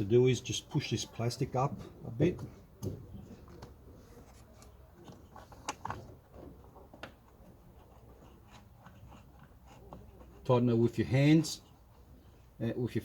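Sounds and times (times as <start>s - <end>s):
plastic trim clicks and scrapes: 4.6s - 6.2s.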